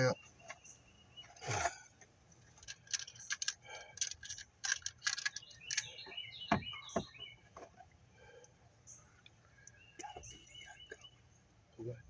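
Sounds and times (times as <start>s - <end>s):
birds chirping: 0.0s - 12.0s
tools and engine parts clicking: 1.4s - 7.0s.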